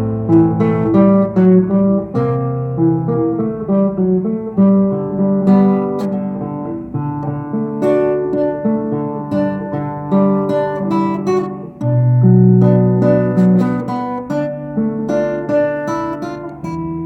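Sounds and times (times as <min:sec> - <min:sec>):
acoustic guitar playing: 0:00.0 - 0:17.0.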